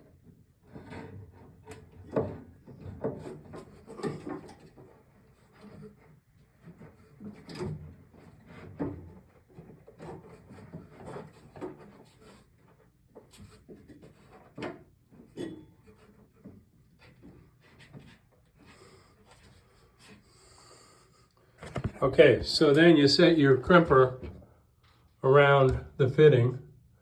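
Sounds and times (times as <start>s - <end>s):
crimping tool knocking and scraping: 21.6s - 22.8s.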